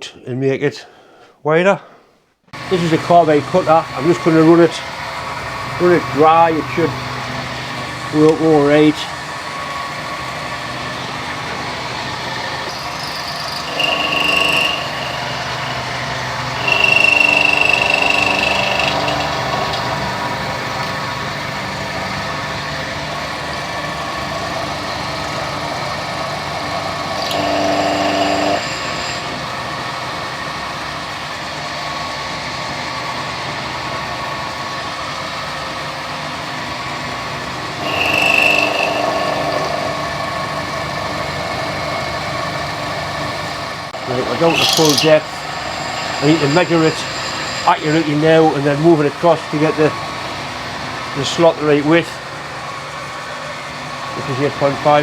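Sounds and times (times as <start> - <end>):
milling machine cutting metal: 2.6 - 55.0
thin high squeal: 12.7 - 20.2, 44.3 - 48.3.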